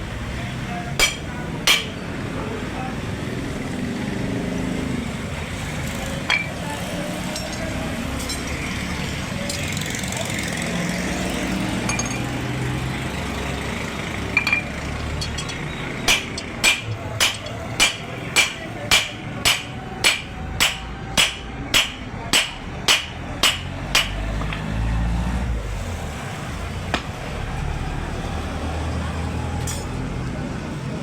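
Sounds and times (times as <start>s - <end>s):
hammer beating metal on anvil: 1.0s - 2.0s, 14.4s - 24.6s
metal clinks: 7.3s - 8.7s, 11.8s - 12.4s, 14.4s - 17.6s.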